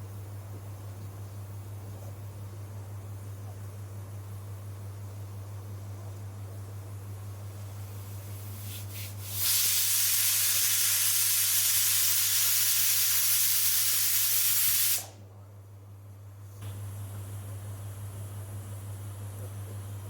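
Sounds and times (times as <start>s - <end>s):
pressure cooker steam hiss: 7.8s - 15.2s
pressure cooker puffs: 8.1s - 15.2s.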